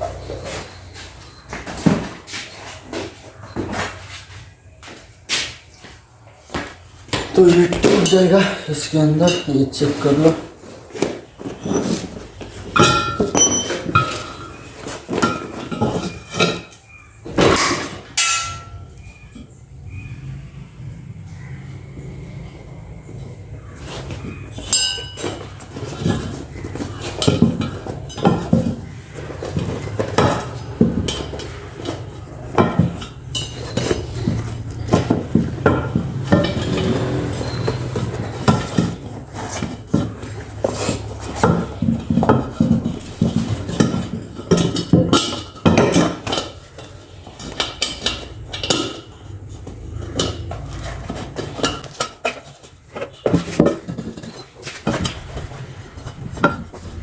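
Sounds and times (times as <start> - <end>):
steel tools clinking on rim: 11.6 - 16.8, 17.6 - 19.2, 24.5 - 57.0.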